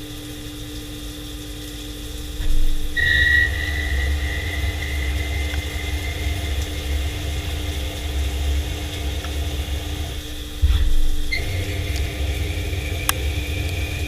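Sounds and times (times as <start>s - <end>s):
loud low rumble: 2.4s - 14.0s
machine tool humming and whining: 3.0s - 14.0s.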